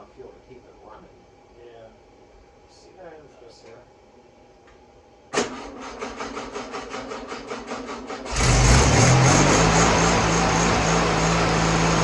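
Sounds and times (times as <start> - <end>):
car engine cranking on starter: 5.4 - 11.6
car engine running: 8.3 - 12.0.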